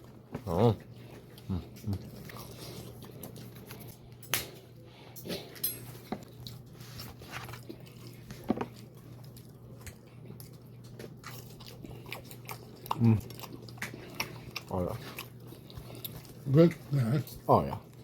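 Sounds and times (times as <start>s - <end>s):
person chewing crunchy food: 0.0s - 18.0s
steady low hum: 0.0s - 18.0s.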